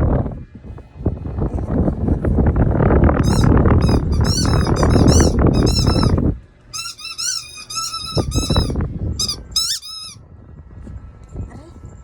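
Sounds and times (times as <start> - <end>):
dog whining: 3.2 - 6.2, 6.8 - 10.2.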